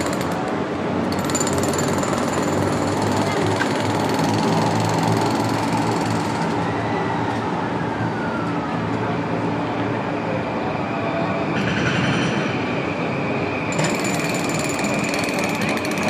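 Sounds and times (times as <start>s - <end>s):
train whine: 0.0s - 16.0s
train rumbling past: 9.8s - 16.0s.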